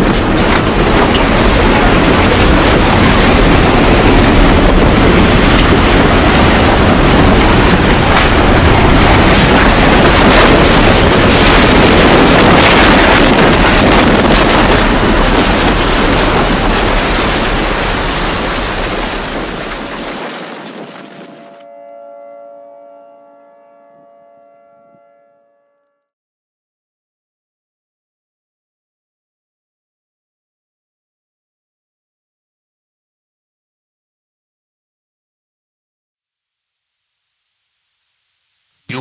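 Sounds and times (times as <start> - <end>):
roar of tornado-force wind: 0.0 - 22.2.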